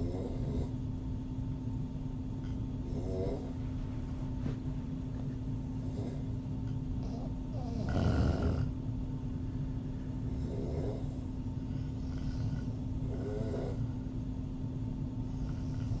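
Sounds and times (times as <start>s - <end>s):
steady low hum: 0.0s - 16.0s
woman snoring: 2.8s - 3.5s, 7.0s - 8.7s, 10.3s - 11.2s, 12.0s - 13.9s.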